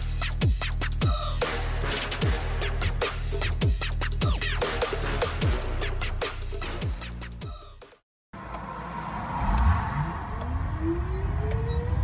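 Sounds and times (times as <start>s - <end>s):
electronic music with heavy bass: 0.0s - 8.0s.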